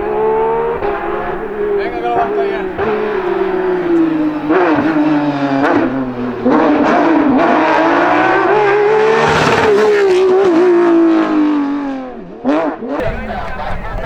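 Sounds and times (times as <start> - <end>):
gear changes: 0.0 - 11.2
race car engine revving: 0.0 - 14.0.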